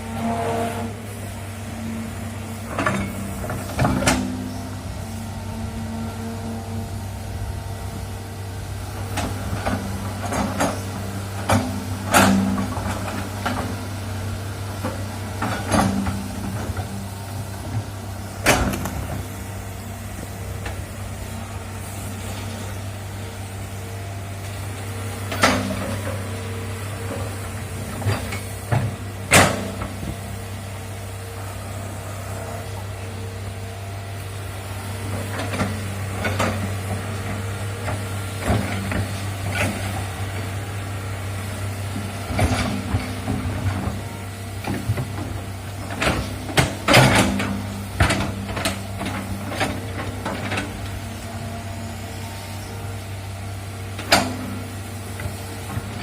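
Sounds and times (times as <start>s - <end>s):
diesel engine running: 0.0s - 56.0s
excavator bucket clanking: 44.6s - 50.9s.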